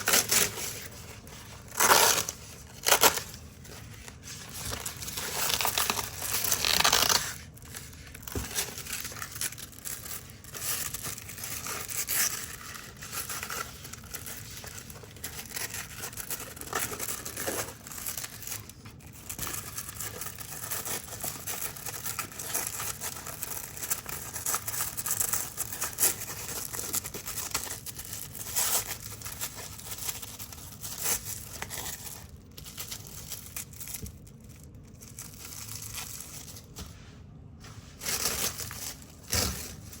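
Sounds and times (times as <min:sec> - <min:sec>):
velcro strips ripping: 0:05.4 - 0:07.4.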